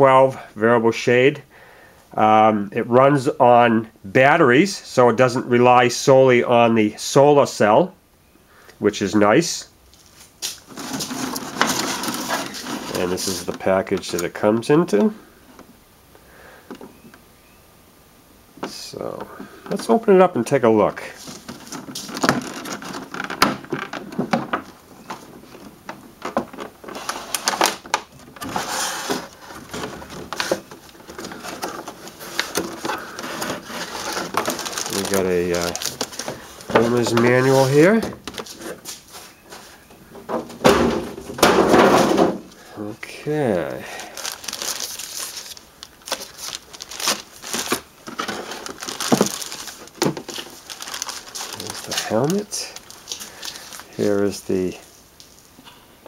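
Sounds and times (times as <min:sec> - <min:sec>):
packaging scraping and rustling: 0:10.0 - 0:14.4, 0:21.0 - 0:42.8, 0:43.6 - 0:54.9
packaging knocks and clicks: 0:21.3 - 0:38.6, 0:44.2 - 0:53.9.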